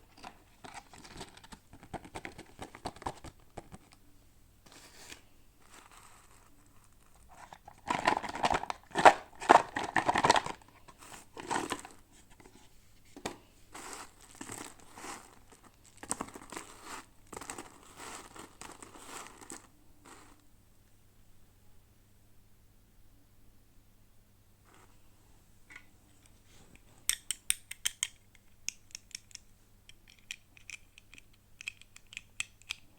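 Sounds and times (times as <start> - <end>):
plastic packaging crinkling and tearing: 13.8 - 20.3.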